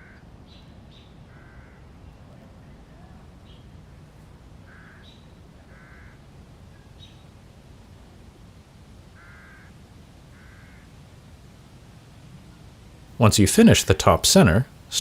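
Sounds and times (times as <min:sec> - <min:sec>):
low outdoor hum: 0:00.0 - 0:15.0
crow cawing: 0:01.3 - 0:01.8, 0:04.7 - 0:06.2, 0:09.2 - 0:10.9.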